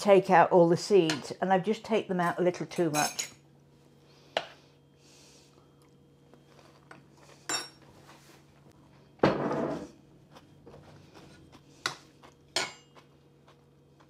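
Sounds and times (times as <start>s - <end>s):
dishes and utensils clinking: 7.4s - 7.8s.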